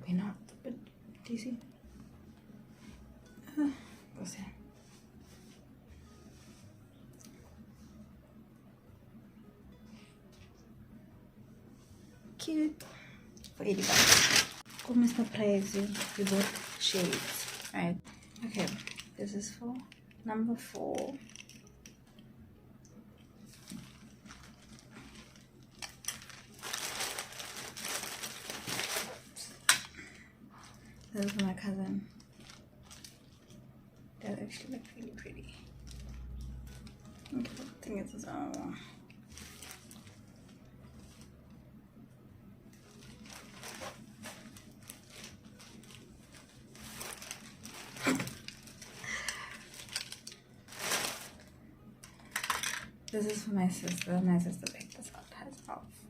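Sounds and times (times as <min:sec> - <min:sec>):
packaging crinkling: 0:13.7 - 0:20.1, 0:21.0 - 0:21.7, 0:23.5 - 0:29.9, 0:32.1 - 0:33.6, 0:39.3 - 0:41.2, 0:42.7 - 0:52.8.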